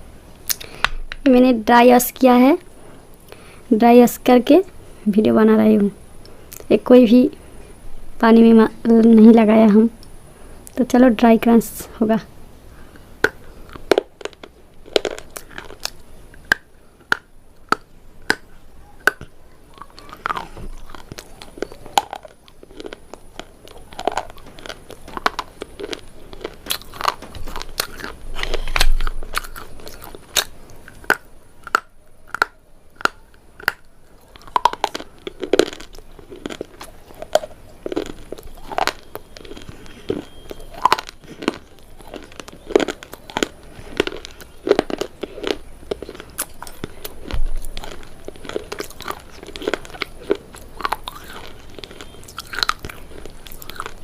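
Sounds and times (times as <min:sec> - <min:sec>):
crunching hard dry food: 0:12.7 - 0:54.0
soft chewing: 0:12.7 - 0:54.0.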